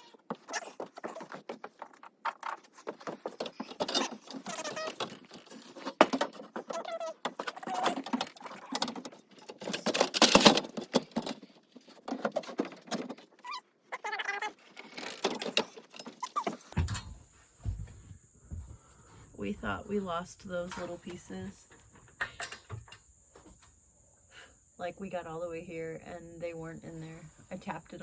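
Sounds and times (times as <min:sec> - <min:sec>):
plastic clattering: 0:00.2 - 0:13.4.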